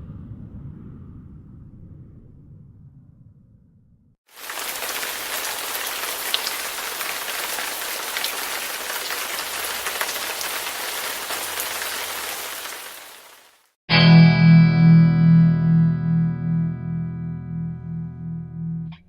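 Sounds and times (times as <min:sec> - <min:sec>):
rain drop ticks: 0:04.3 - 0:13.4
rain hissing on a surface: 0:04.3 - 0:13.8.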